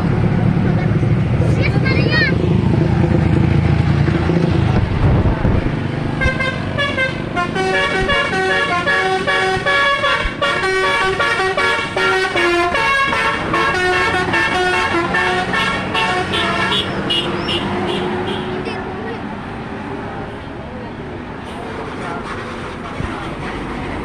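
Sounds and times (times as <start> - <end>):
low engine rumble: 0.0 - 11.2
multi-trumpet bus horn tune: 6.2 - 18.7.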